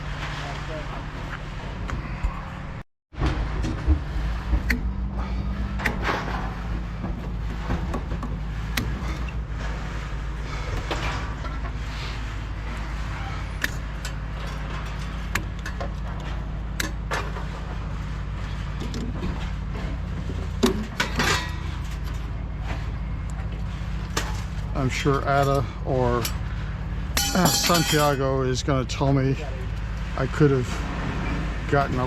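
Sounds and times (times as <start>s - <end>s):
scrap metal clanking: 3.2s - 26.6s, 27.2s - 28.3s.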